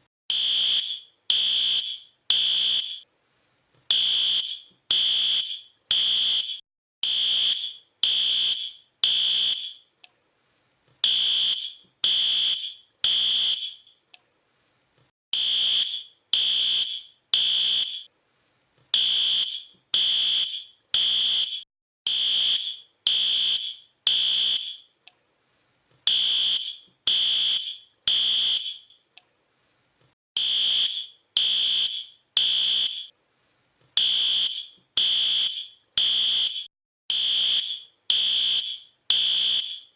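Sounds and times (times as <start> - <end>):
fire alarm beeping: 0.3 - 3.0, 3.9 - 9.9, 11.0 - 14.0, 15.4 - 18.1, 19.0 - 24.9, 26.1 - 29.0, 30.4 - 33.1, 34.0 - 39.9.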